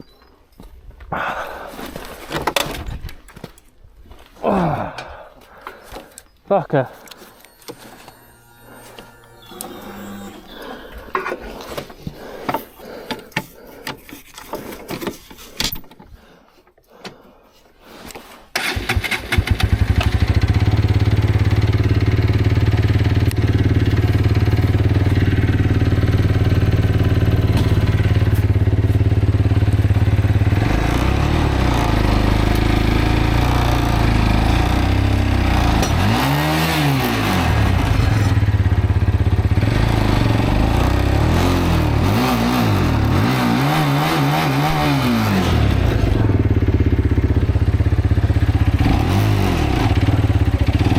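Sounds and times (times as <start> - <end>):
motorcycle engine running and revving: 18.8 - 50.9.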